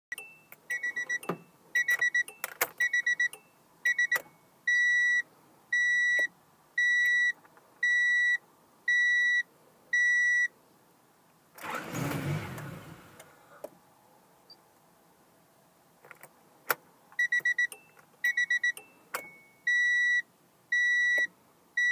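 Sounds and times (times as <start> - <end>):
car engine cranking: 11.6 - 13.3.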